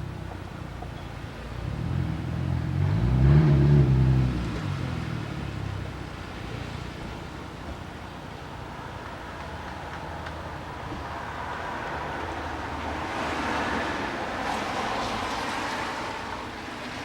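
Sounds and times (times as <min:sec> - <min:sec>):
vehicle passing by: 0:11.1 - 0:17.0.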